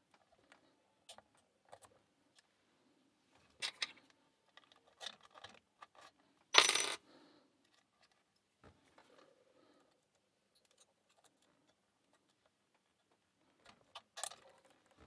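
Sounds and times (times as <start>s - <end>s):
lock picks clicking and scraping: 3.5s - 6.6s, 9.8s - 12.5s, 13.6s - 15.0s.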